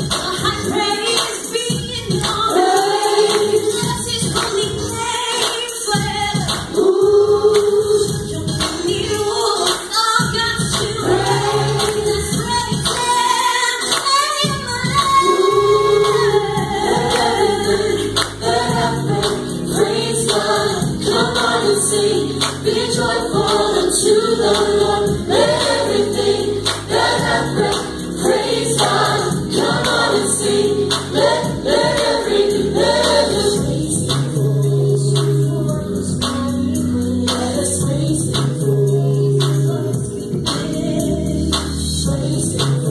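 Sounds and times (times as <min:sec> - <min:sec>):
vocal group singing: 0:00.0 - 0:42.9
band accompaniment: 0:03.5 - 0:42.9
steady bass line: 0:10.4 - 0:13.0, 0:14.5 - 0:42.9.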